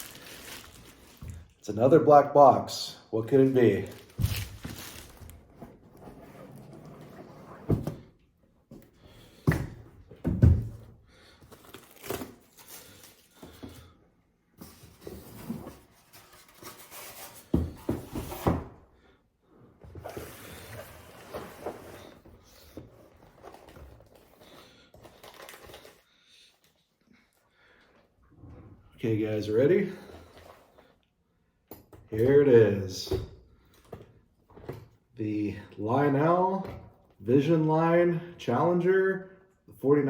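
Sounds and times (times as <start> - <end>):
packaging rustling and scraping: 0.0 - 1.6, 3.4 - 7.7, 11.4 - 13.6, 14.6 - 18.4, 20.0 - 26.1.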